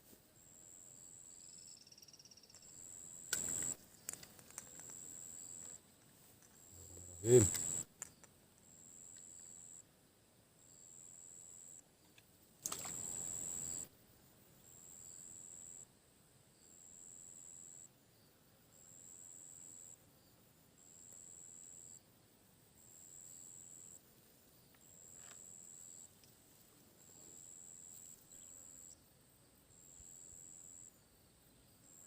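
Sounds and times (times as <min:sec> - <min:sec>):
insect calling in high pulses: 0:06.8 - 0:07.9.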